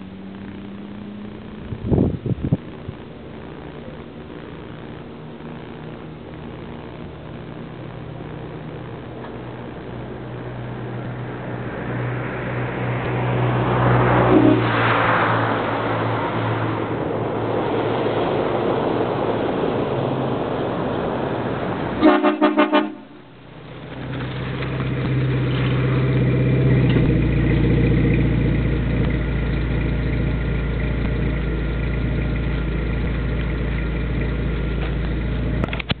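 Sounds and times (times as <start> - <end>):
car engine and road noise: 0.0 - 36.0
train horn blasts: 14.2 - 14.8, 22.0 - 23.2.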